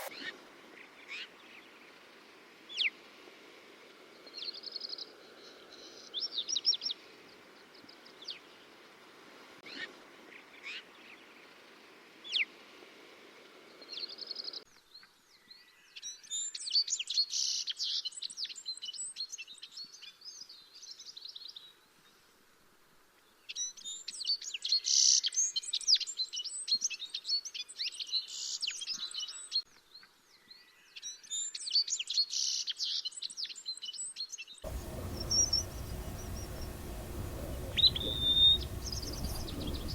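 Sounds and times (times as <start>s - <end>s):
twittering birdsong: 34.6s - 39.9s
songbird calls: 34.7s - 39.9s.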